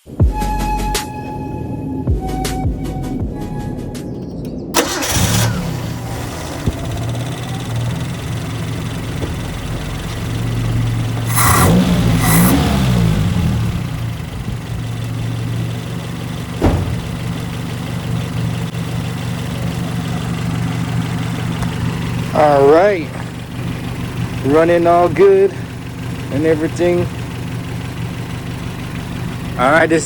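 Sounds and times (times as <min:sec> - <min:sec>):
car engine idling: 0:02.2 - 0:30.0
sharp knock: 0:16.6 - 0:17.0.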